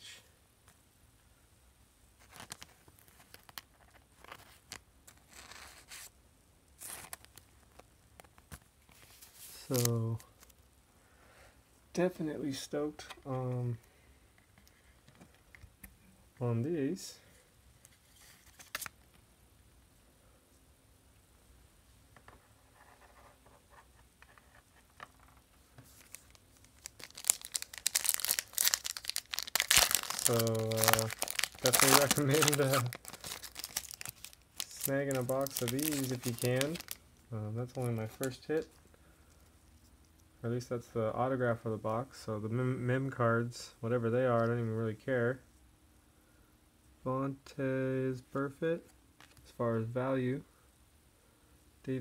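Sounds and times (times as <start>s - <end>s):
card wrapper crinkling: 2.2s - 6.1s, 6.8s - 10.6s, 18.0s - 19.0s, 24.3s - 37.0s, 37.6s - 38.7s.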